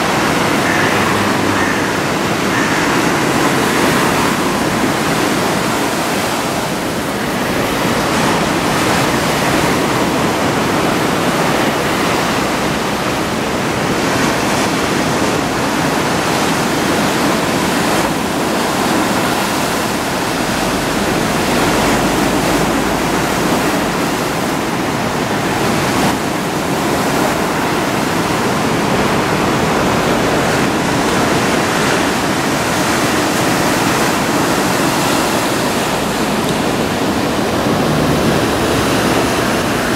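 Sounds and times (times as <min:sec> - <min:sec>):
surf breaking on shore: 0:00.0 - 0:39.9.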